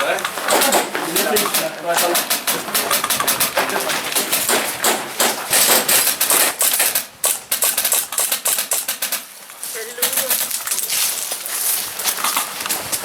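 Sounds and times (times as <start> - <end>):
airsoft guns firing: 0.4 - 9.3.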